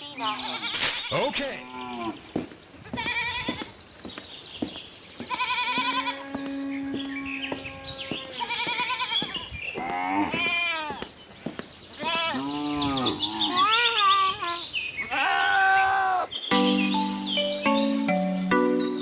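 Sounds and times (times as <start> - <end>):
farm animals bleating: 0.0 - 2.2, 2.8 - 3.8, 5.2 - 11.1, 12.0 - 16.3.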